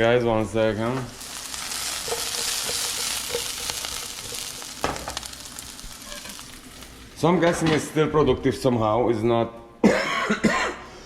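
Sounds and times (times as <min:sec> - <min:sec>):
food sizzling in frying pan: 0:00.8 - 0:07.2.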